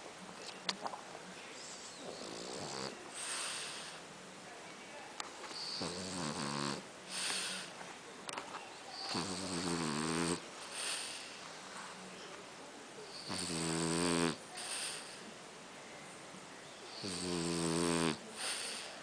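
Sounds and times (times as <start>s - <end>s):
pet snoring: 1.8s - 4.0s, 5.5s - 7.7s, 9.0s - 11.2s, 13.1s - 15.2s, 16.9s - 18.8s.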